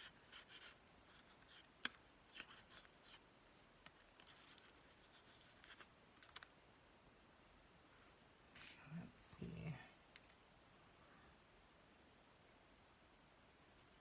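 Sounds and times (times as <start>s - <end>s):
paper and card rustling: 0.0s - 6.5s.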